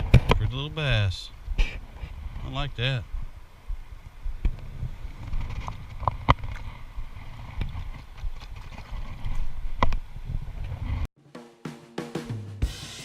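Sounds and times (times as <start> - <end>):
wind on microphone: 0.0 - 11.1
drum-kit music: 11.2 - 13.0.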